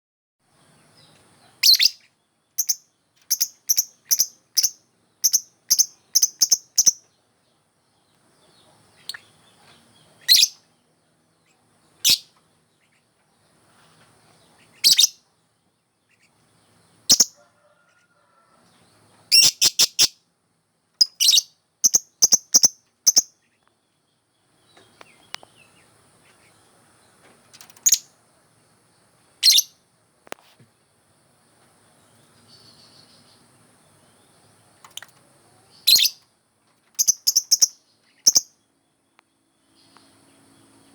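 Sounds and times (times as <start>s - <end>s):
lovebird chirping: 0.8s - 7.1s, 8.4s - 10.7s, 11.4s - 13.0s, 14.6s - 15.2s, 17.0s - 17.5s, 19.3s - 20.2s, 21.0s - 23.6s, 27.8s - 28.2s, 29.4s - 29.8s, 34.1s - 36.2s, 37.0s - 38.6s.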